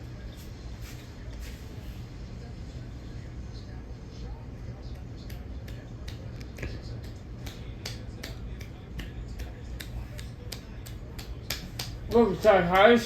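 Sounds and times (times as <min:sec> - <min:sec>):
ceiling fan clicking: 0:04.9 - 0:13.0.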